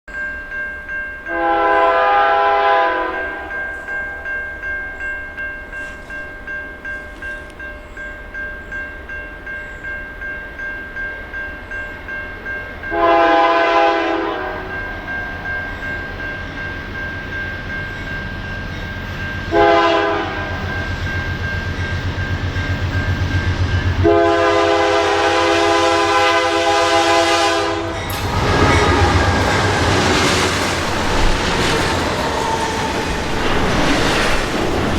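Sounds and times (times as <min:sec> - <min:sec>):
crossing bell ringing: 0:00.1 - 0:34.9
train rumble and wheel noise: 0:00.1 - 0:34.9
locomotive horn blasts: 0:01.3 - 0:03.6, 0:12.9 - 0:14.9, 0:19.5 - 0:20.7, 0:24.0 - 0:31.7.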